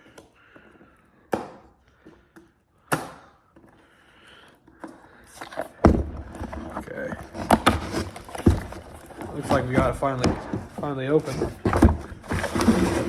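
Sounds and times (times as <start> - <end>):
knife scraping cardboard: 6.2 - 13.0.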